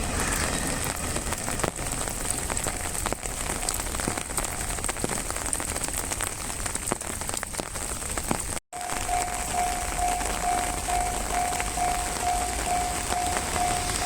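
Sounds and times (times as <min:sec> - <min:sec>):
rain tapping on umbrella: 0:00.2 - 0:14.0.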